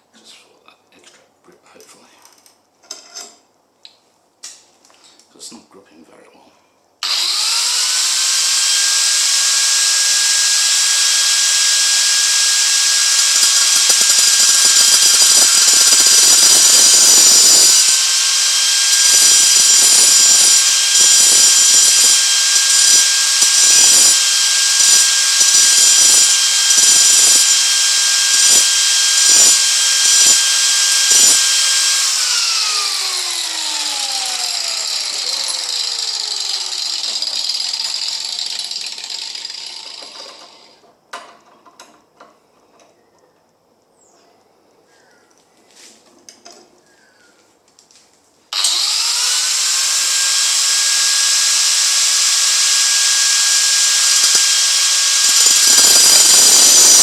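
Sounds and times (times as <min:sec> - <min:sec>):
power tool whining cutting metal: 0:07.0 - 0:40.9, 0:48.5 - 0:57.0.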